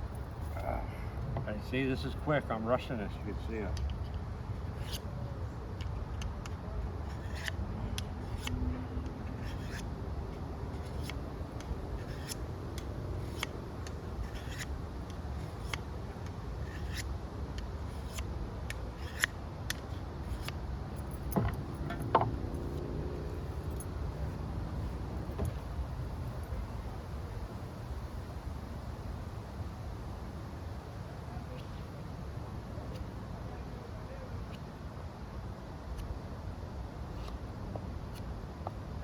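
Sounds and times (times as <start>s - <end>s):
knife scraping on sharpening stone: 9.4s - 9.8s, 12.0s - 12.4s, 14.2s - 14.7s, 16.6s - 17.1s.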